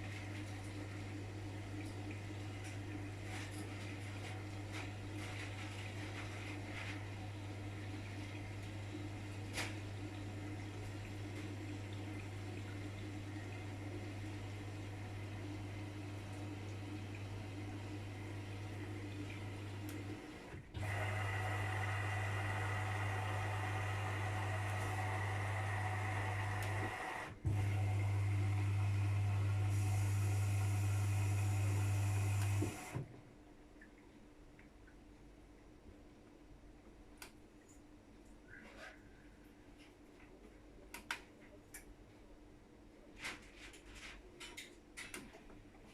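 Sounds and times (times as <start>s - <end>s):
water rushing into washing machine: 0.0s - 33.1s
low electrical hum: 0.0s - 45.9s.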